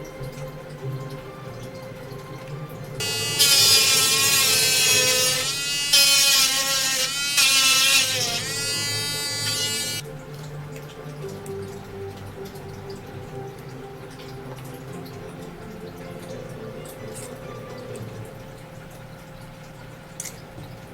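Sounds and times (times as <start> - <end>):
electric drill whining: 3.0 - 10.0.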